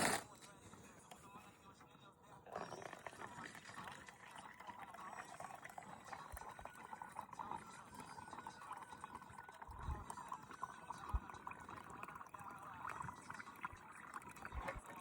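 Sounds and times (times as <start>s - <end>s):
juice pouring into a cup: 0.0s - 0.6s, 2.4s - 15.0s.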